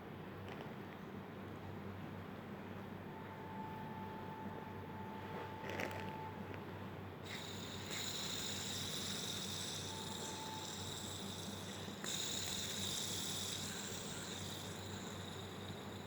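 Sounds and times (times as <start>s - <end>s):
fidget spinner whirring: 7.2s - 16.0s.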